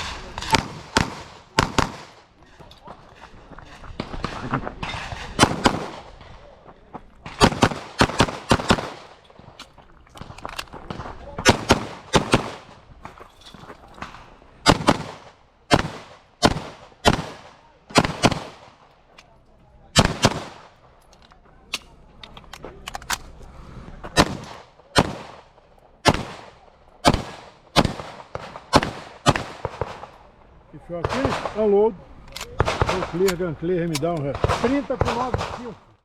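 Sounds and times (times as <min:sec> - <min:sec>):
pistol shots with echo: 0:00.0 - 0:02.3, 0:04.0 - 0:06.2, 0:07.3 - 0:09.3, 0:10.9 - 0:12.8, 0:14.6 - 0:18.8, 0:19.9 - 0:20.8, 0:24.2 - 0:30.2, 0:31.0 - 0:31.8, 0:32.4 - 0:35.8.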